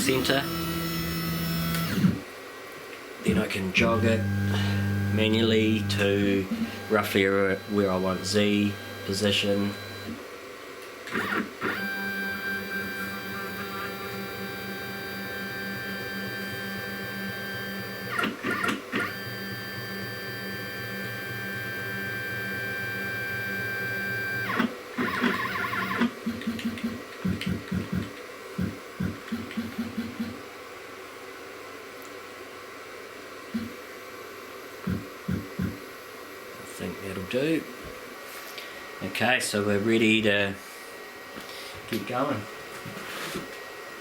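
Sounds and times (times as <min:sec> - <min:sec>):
stepper motors whining: 0:00.0 - 0:02.2, 0:03.3 - 0:10.2, 0:11.1 - 0:26.1.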